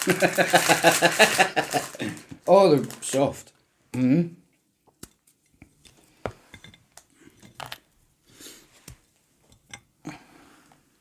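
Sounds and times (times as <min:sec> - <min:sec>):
food packaging rustling: 0:00.0 - 0:03.5.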